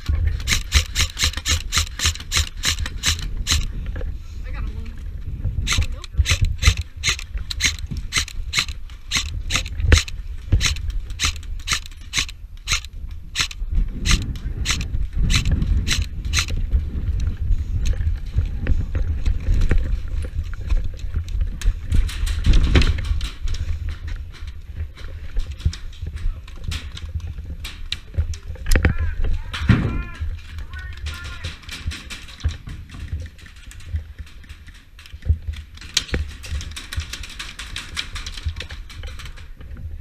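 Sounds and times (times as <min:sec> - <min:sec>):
low wind rumble: 0:00.0 - 0:40.0
camera handling noise: 0:00.4 - 0:03.7, 0:05.6 - 0:16.6.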